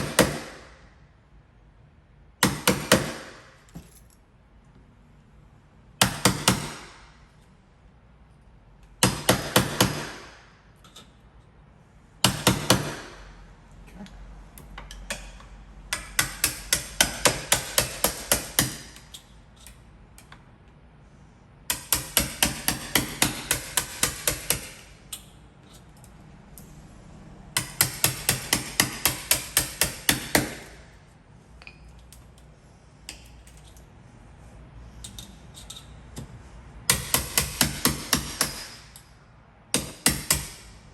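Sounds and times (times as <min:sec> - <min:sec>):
hammer striking chisel into wood: 0:00.0 - 0:00.7, 0:02.4 - 0:03.5, 0:06.0 - 0:07.1, 0:09.0 - 0:10.4, 0:12.2 - 0:13.2, 0:15.9 - 0:19.0, 0:21.7 - 0:24.8, 0:27.6 - 0:30.8, 0:36.9 - 0:39.0, 0:39.7 - 0:40.7.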